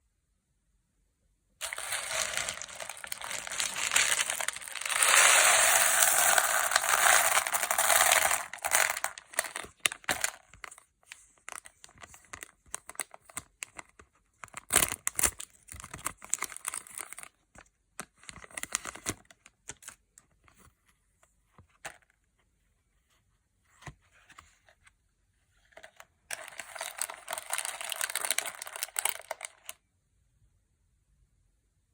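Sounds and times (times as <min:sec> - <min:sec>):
thin material crinkling and tearing: 0:01.6 - 0:10.8.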